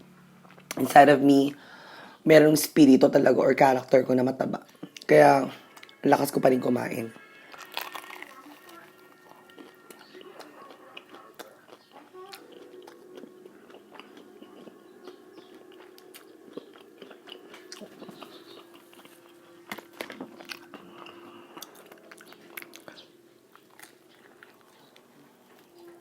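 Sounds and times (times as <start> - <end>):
faint steady hum: 0.0 - 26.0
crunching bites of fried chicken: 7.3 - 25.8
wet chewing: 7.5 - 26.0.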